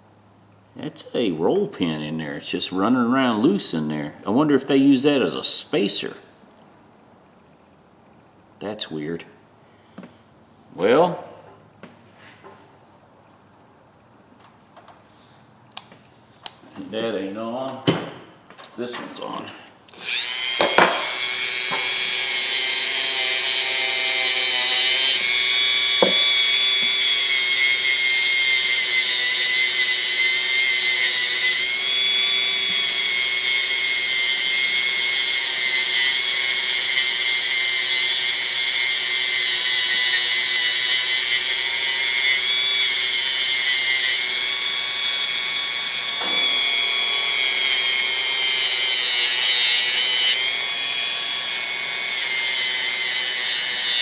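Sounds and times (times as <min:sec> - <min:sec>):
power tool whining: 0:19.9 - 0:54.0.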